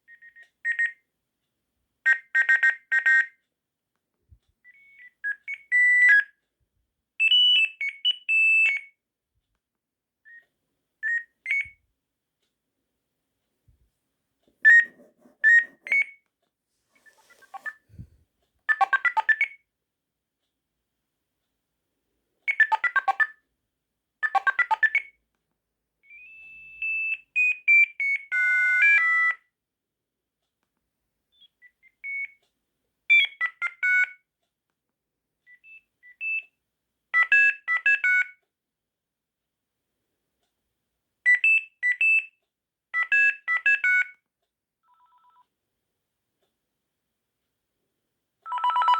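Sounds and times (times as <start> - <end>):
electronic phone ringtones: 18.7 - 19.5, 22.5 - 23.3, 24.2 - 25.1, 48.5 - 48.9.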